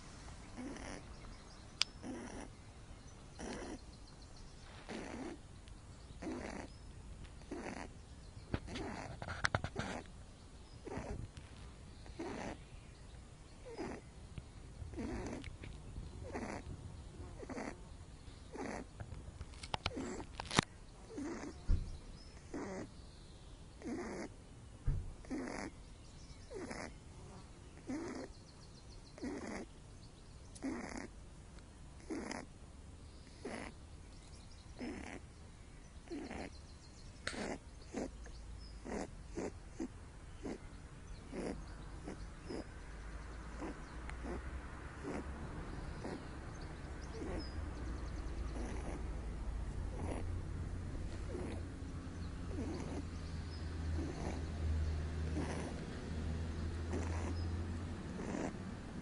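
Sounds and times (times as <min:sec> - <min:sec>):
rabbit snoring: 0:00.0 - 0:01.2, 0:01.8 - 0:02.6, 0:03.3 - 0:03.9, 0:04.6 - 0:05.5, 0:06.2 - 0:10.2, 0:10.8 - 0:12.7, 0:13.6 - 0:14.2, 0:14.8 - 0:17.9, 0:18.5 - 0:19.1, 0:19.7 - 0:23.0, 0:23.8 - 0:24.4, 0:25.2 - 0:25.8, 0:26.4 - 0:28.4, 0:29.1 - 0:29.8, 0:30.5 - 0:31.2, 0:32.0 - 0:32.6, 0:33.2 - 0:33.8, 0:34.7 - 0:35.3, 0:36.0 - 0:36.6, 0:37.2 - 0:59.0.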